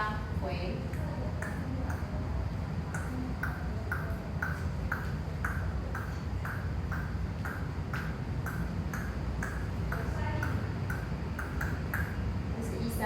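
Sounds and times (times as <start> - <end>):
low steady rumble: 0.0 - 13.0
metronome pings: 3.0 - 12.3.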